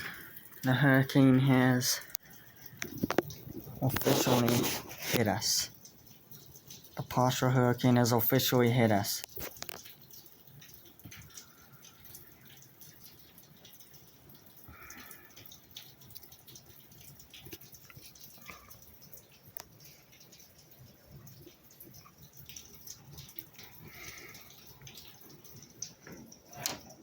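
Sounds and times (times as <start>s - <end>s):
water drips and splats: 0.0s - 27.0s
heavy rain hiss: 3.8s - 5.7s.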